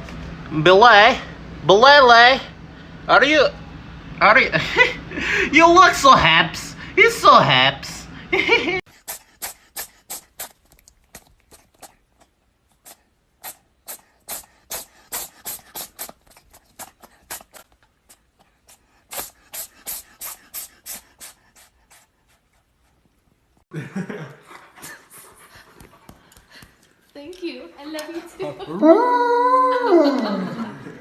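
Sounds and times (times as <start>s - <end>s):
dog panting: 8.9s - 23.6s, 24.4s - 28.8s.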